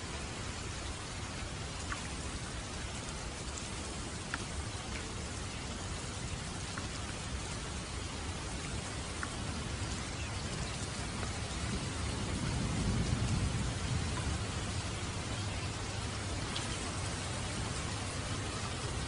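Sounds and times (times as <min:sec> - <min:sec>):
steady rain falling: 0:00.0 - 0:19.0
distant thunder rumbling: 0:09.4 - 0:19.0.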